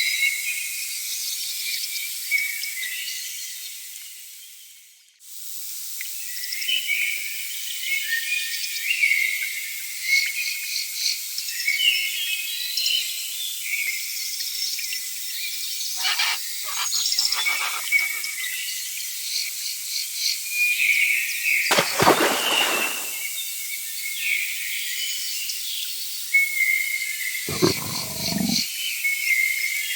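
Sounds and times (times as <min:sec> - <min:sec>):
lower bird calls: 0:16.0 - 0:18.4, 0:27.5 - 0:28.6
insects chirping and trilling: 0:16.0 - 0:18.5.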